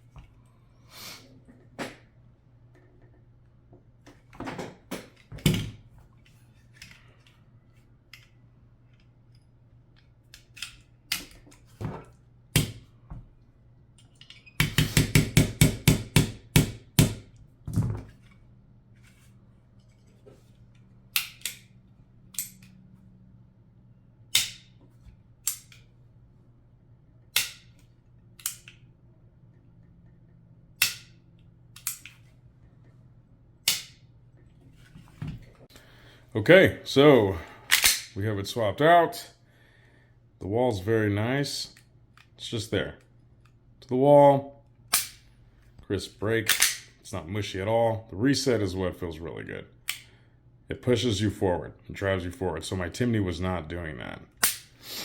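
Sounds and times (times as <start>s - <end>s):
metallic pistol parts clicking: 8.1s - 11.6s, 21.1s - 22.8s, 24.3s - 24.8s, 25.4s - 25.9s, 27.3s - 28.9s, 30.8s - 32.2s, 33.6s - 34.0s, 37.7s - 38.2s, 44.9s - 45.2s, 46.5s - 47.0s, 49.9s - 50.1s, 54.4s - 54.7s.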